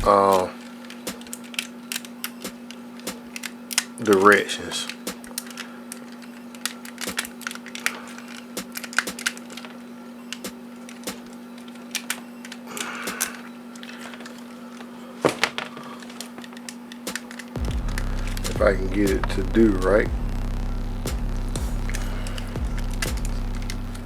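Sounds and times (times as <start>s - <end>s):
steady low hum: 0.0s - 24.0s
plastic clicks and taps: 4.9s - 13.4s.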